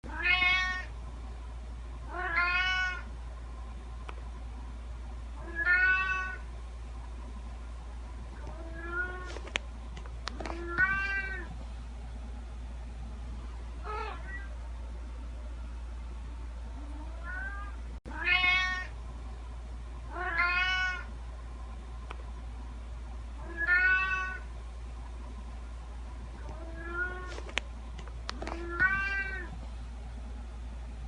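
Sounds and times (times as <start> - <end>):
steady low hum: 0.0 - 31.0
cat meowing: 0.1 - 0.9, 2.1 - 3.1, 5.4 - 6.4, 8.5 - 9.3, 10.6 - 11.5, 13.8 - 14.5, 17.2 - 18.9, 20.1 - 21.1, 23.4 - 24.5, 26.5 - 27.3, 28.5 - 29.6.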